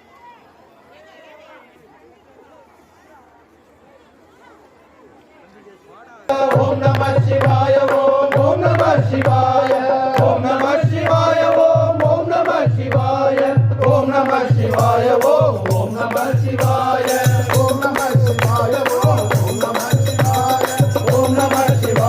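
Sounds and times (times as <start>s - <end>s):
devotional chant-like singing: 6.3s - 22.0s
steady drum beat: 6.3s - 22.0s.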